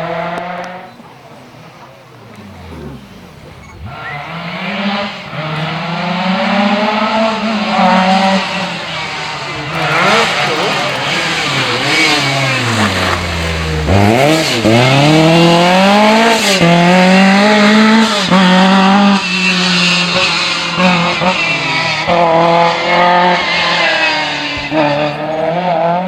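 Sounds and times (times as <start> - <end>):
rally car engine revving: 0.0 - 26.0.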